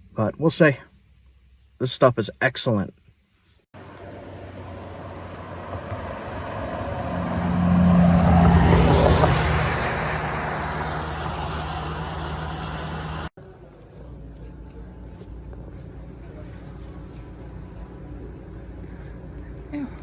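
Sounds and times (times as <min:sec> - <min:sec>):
vehicle driving past: 0:03.8 - 0:13.3.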